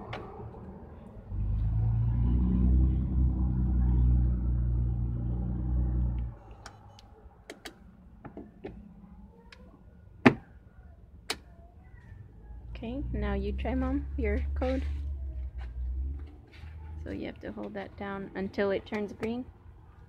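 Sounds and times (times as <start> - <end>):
vehicle engine running: 0.0 - 6.8, 12.6 - 18.2.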